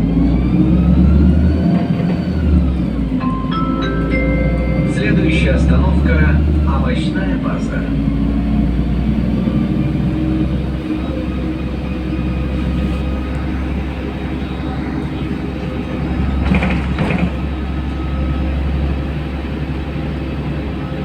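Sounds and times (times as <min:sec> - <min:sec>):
bus engine drone: 0:00.0 - 0:21.0
road noise: 0:00.0 - 0:21.0.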